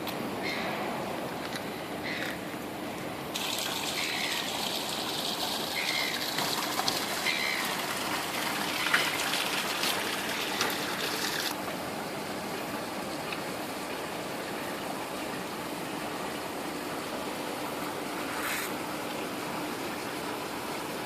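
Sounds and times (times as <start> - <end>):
gushing water hiss: 3.3 - 11.6, 18.2 - 18.9
rain: 3.3 - 18.2.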